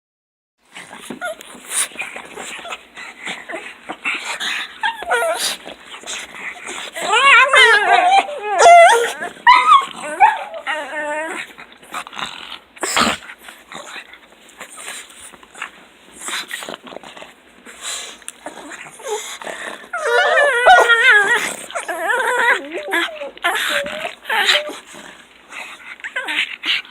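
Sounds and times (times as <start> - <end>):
dog whining: 1.1 - 1.7, 4.6 - 5.6, 6.6 - 11.5, 19.9 - 25.1
dogs whimpering and squealing: 1.1 - 11.6, 18.4 - 26.9.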